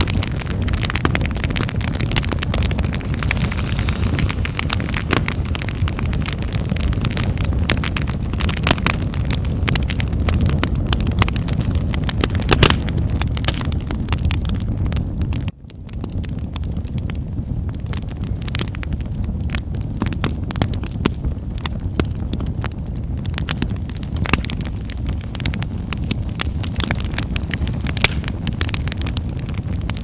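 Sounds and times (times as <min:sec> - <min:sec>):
wood fire crackling: 0:00.0 - 0:30.0
low rumble: 0:00.4 - 0:11.1.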